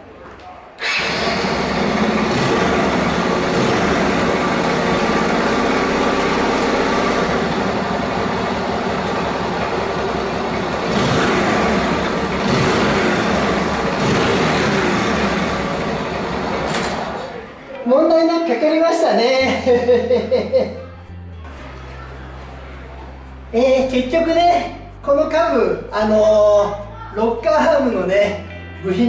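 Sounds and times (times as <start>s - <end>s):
motorcycle engine running: 1.0s - 17.5s.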